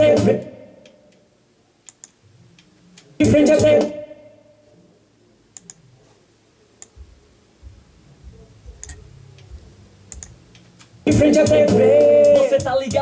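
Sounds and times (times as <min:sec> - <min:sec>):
computer control clicks: 0:01.8 - 0:03.1, 0:05.6 - 0:05.8, 0:08.8 - 0:09.5, 0:10.1 - 0:10.9
soft low thuds: 0:06.9 - 0:09.8.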